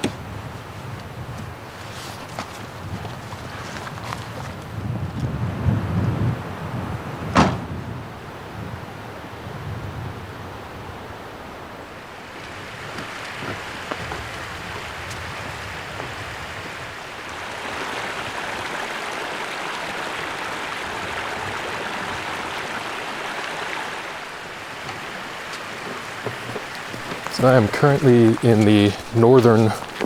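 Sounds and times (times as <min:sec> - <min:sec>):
flowing water rushing: 0:11.5 - 0:30.0.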